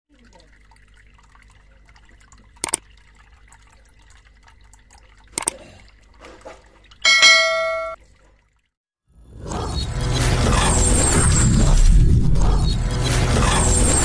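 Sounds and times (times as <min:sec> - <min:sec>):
water dripping and splashing: 0:00.1 - 0:08.8
bright bell-like ring: 0:07.1 - 0:08.0.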